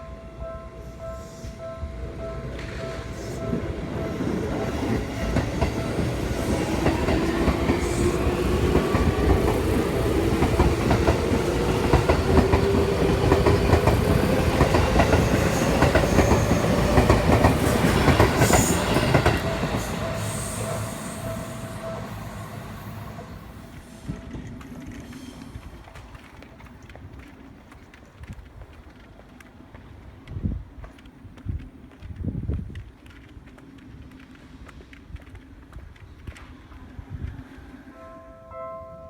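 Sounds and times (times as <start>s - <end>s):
train whine: 0.0s - 27.2s
train wheels clattering: 2.4s - 37.5s.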